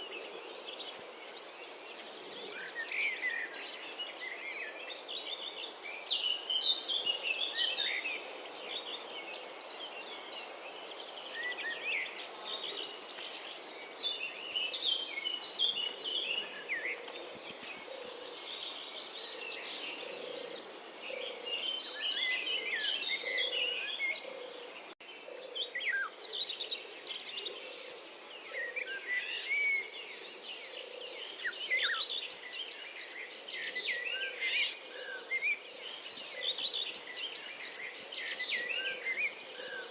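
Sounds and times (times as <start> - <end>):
outdoor background noise: 0.0 - 39.9
robin singing warbles and trills: 0.0 - 39.9.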